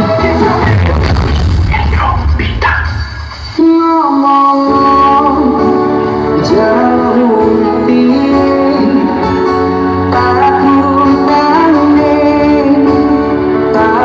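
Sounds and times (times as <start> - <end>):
strong steady bass: 0.0 - 3.8
music with singing: 0.0 - 14.0.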